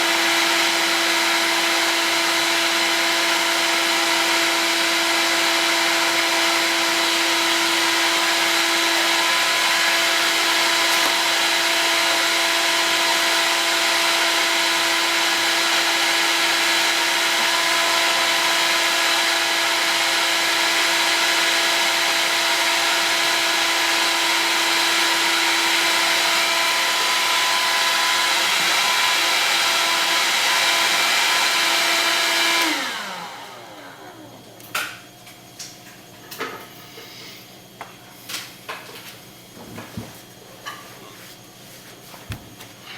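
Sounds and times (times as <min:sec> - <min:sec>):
heat gun blowing: 0:00.0 - 0:33.8
fan winding down: 0:03.3 - 0:34.4.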